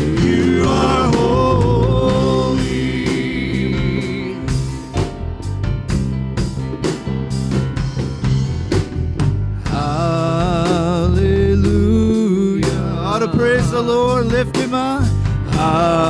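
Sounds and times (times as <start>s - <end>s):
person singing with vibrato: 0.0s - 5.0s, 9.6s - 16.0s
worship band music: 0.0s - 16.0s.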